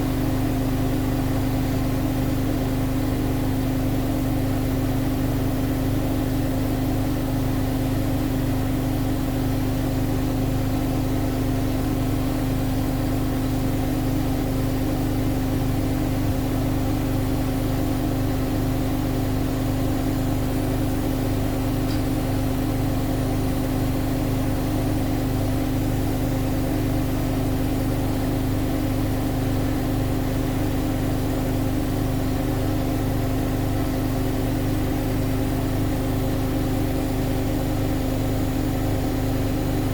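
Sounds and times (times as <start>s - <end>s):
washing machine humming: 0.0s - 39.9s.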